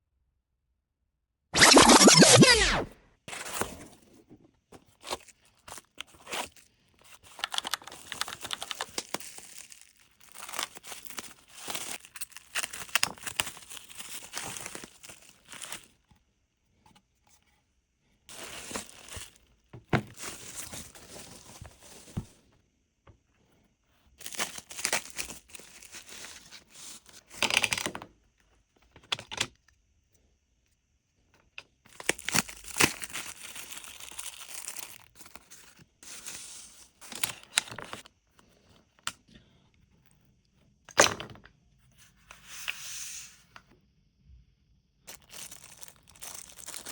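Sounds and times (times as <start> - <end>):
packaging tearing and crinkling: 5.0 - 16.0, 18.3 - 19.5, 24.2 - 27.9, 31.9 - 36.3, 45.1 - 46.9.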